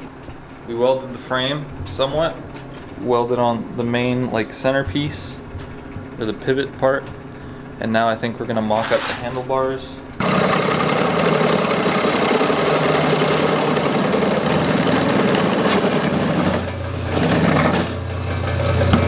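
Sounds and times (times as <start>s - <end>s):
metalworking machinery buzzing: 8.8s - 18.8s.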